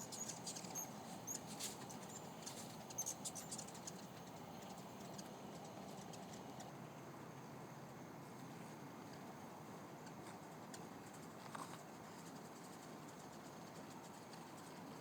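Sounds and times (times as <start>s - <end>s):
hummingbirds chirping: 0.0s - 5.3s.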